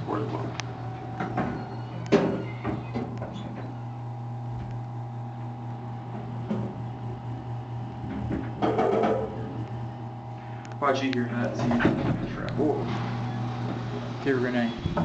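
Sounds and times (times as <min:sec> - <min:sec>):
elevator car humming: 0:00.0 - 0:10.4, 0:11.0 - 0:15.0
elevator car bump: 0:08.0 - 0:09.5.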